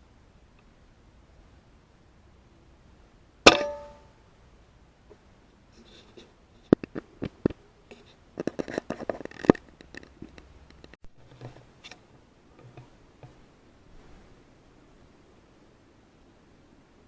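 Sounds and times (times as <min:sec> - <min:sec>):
sharp clicks and rattles: 0:08.4 - 0:11.6.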